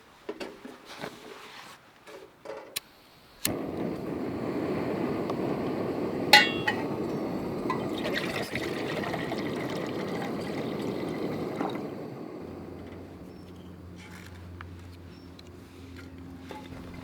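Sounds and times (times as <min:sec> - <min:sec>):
water pouring into a pot: 0:06.3 - 0:12.9
sharp metallic clink: 0:06.4 - 0:06.9.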